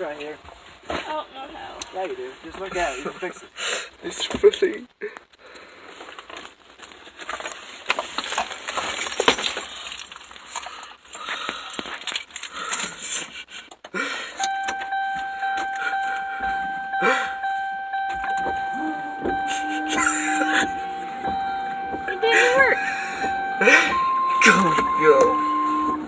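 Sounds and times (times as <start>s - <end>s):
steady high electronic tone: 14.4s - 26.0s.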